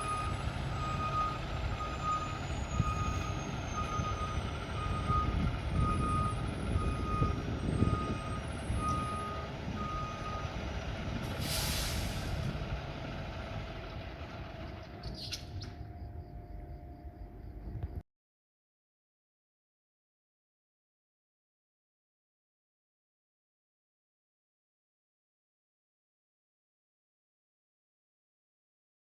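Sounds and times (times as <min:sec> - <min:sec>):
reversing alarm beeps: 0:00.0 - 0:10.6
diesel engine rumble: 0:00.0 - 0:18.0
air brakes hissing: 0:11.2 - 0:12.8.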